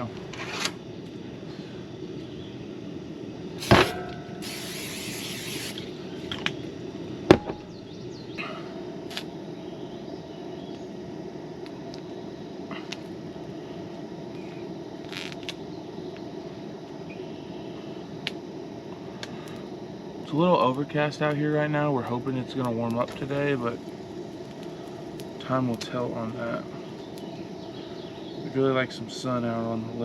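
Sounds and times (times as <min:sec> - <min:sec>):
steady low hum: 0:00.0 - 0:30.0
hiss: 0:03.5 - 0:06.6, 0:20.9 - 0:29.6.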